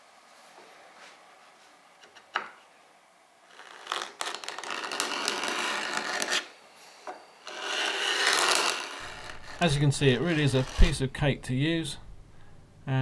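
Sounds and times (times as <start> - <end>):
scraper blade scraping wood: 3.5 - 6.5, 7.4 - 11.0.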